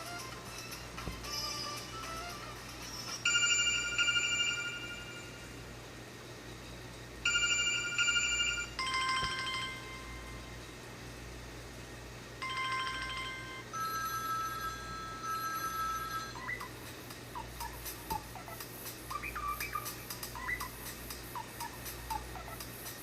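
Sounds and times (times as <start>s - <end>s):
trilling electronic ringtone: 0.0s - 5.6s, 7.2s - 10.5s, 12.4s - 16.8s, 17.4s - 23.0s
chirping whistle-like tone: 19.1s - 20.7s.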